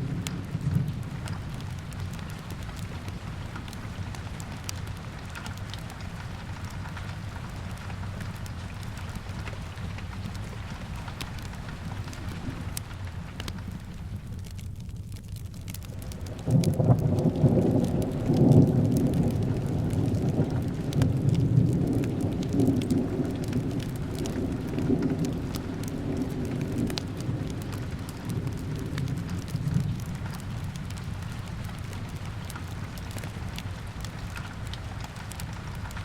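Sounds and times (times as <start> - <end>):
steady rain: 0.0 - 36.0
thunder rolling: 16.0 - 32.2.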